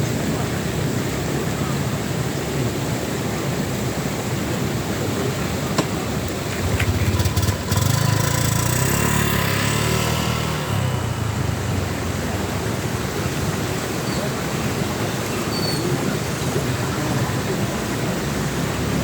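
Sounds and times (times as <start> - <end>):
outdoor background noise: 0.0 - 19.0
vehicle engine passing by: 6.0 - 14.0.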